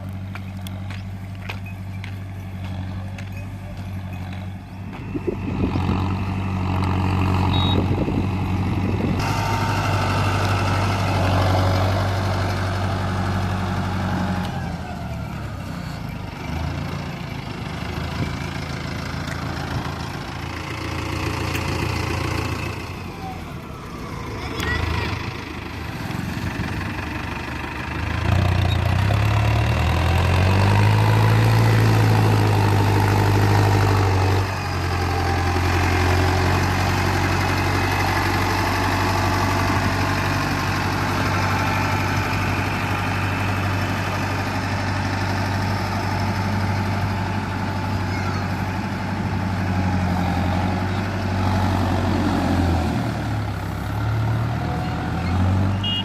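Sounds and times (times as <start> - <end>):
tractor diesel engine revving: 0.0 - 56.0.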